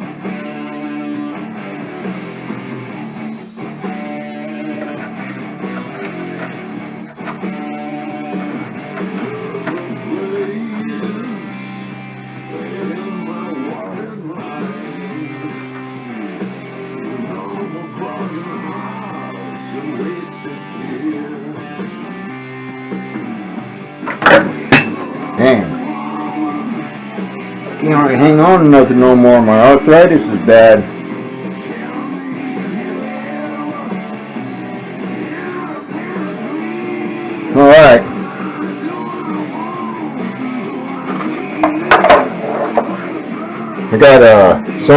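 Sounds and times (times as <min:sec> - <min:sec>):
guitar background music: 0:00.0 - 0:44.9.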